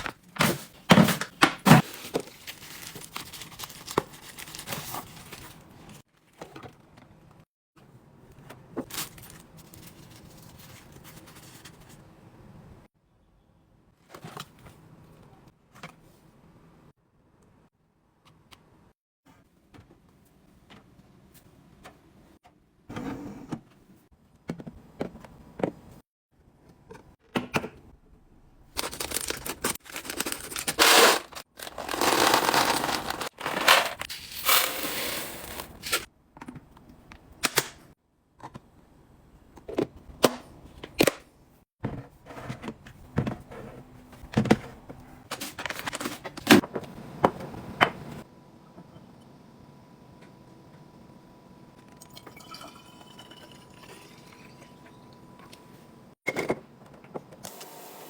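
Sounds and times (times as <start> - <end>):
packaging rustling: 0.0 - 5.7, 28.8 - 36.1.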